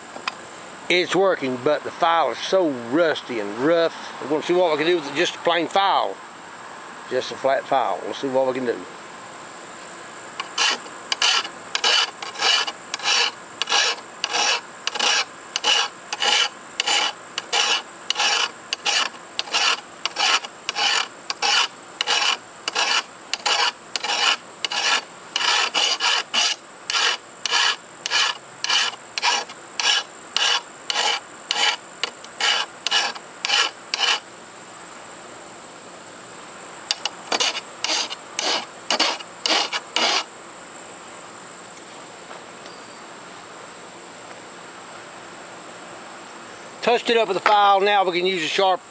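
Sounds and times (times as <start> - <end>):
file rasping on steel blade: 10.4 - 34.2, 36.9 - 40.3.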